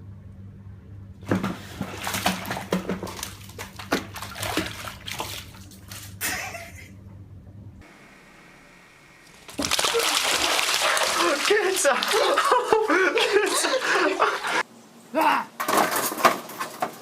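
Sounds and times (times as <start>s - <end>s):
steady low hum: 0.0s - 15.2s
water splashing in a bathtub: 1.2s - 6.2s, 9.2s - 14.6s.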